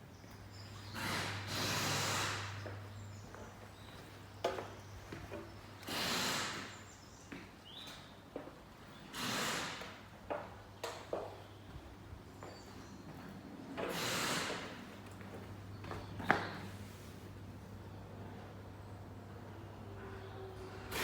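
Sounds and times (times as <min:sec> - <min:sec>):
compressed air hissing from air gun: 0:01.0 - 0:02.6, 0:05.9 - 0:06.7, 0:13.9 - 0:14.8.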